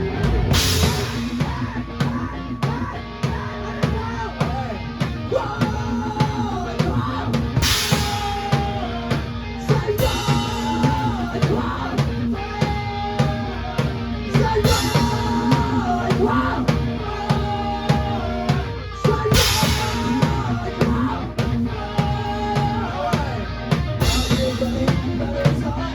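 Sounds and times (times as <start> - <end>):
drum kit playing: 0.0 - 25.9
rock backing track: 0.0 - 25.9
cymbal crash: 0.5 - 1.5.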